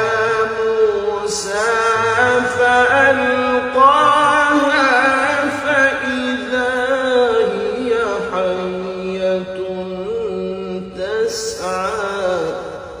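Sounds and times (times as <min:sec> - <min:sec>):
man chanting recitation: 0:00.0 - 0:13.0.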